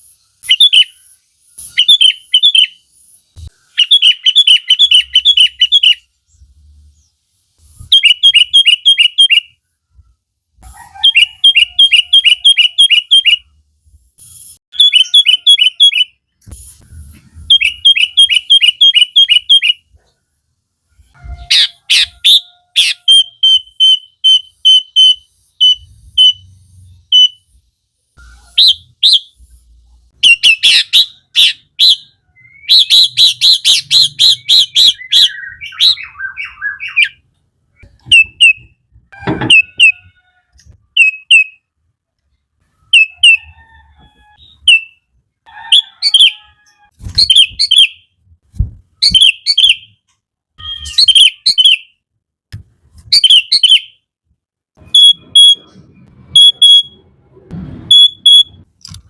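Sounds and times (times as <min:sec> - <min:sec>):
bird chirping and whistling: 0:00.4 - 0:01.0, 0:01.6 - 0:02.8, 0:03.5 - 0:06.4, 0:07.7 - 0:09.6, 0:11.0 - 0:13.5, 0:14.7 - 0:16.2, 0:17.4 - 0:19.8, 0:21.2 - 0:27.5, 0:28.2 - 0:29.4, 0:30.2 - 0:37.2, 0:37.8 - 0:38.7, 0:41.0 - 0:41.6, 0:42.9 - 0:43.5, 0:44.4 - 0:45.0, 0:47.1 - 0:48.0, 0:49.0 - 0:50.0, 0:50.6 - 0:51.9, 0:53.1 - 0:54.0, 0:54.9 - 0:55.6.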